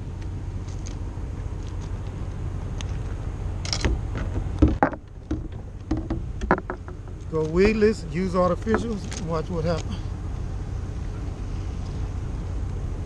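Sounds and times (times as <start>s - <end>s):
steady low rumble: 0.0s - 13.0s
hook and tackle clicks and knocks: 3.7s - 7.8s.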